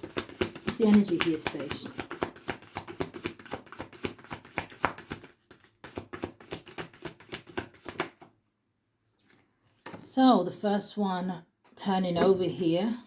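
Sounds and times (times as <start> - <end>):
cards being shuffled by hand: 0.0 - 8.3.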